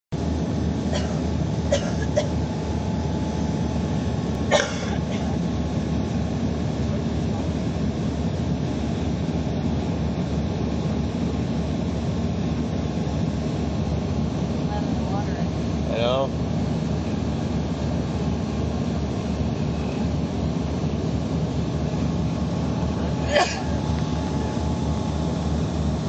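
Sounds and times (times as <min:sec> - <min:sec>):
aircraft rumble: 0:00.1 - 0:26.0.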